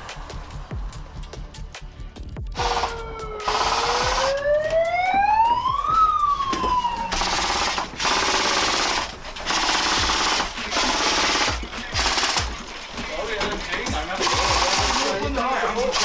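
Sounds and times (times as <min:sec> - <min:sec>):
airsoft rifles firing bursts: 0:02.6 - 0:04.4, 0:07.2 - 0:12.8, 0:14.0 - 0:16.0
siren wailing: 0:02.6 - 0:11.1.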